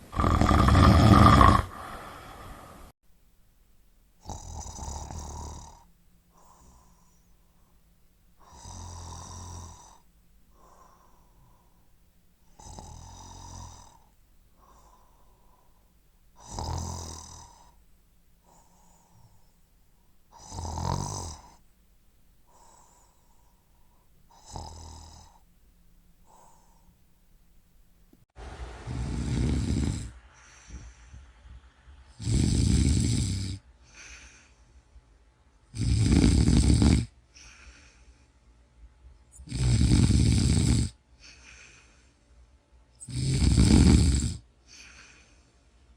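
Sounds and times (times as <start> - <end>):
person snoring loudly: 0.0 - 2.6, 4.2 - 6.9, 8.4 - 10.0, 12.5 - 15.1, 16.4 - 17.8, 20.3 - 21.6, 24.3 - 25.4, 28.9 - 30.3, 32.2 - 33.6, 35.7 - 37.1, 39.4 - 41.0, 43.0 - 44.4
soft breathing: 1.6 - 3.0, 4.2 - 28.3, 29.9 - 32.2, 33.6 - 35.3, 37.2 - 38.8, 41.1 - 42.6, 44.6 - 45.9.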